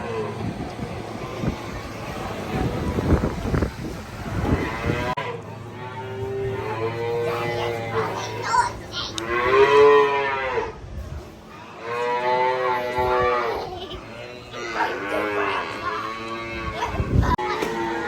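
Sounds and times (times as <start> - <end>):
calf mooing: 9.2 - 10.8, 14.1 - 16.8.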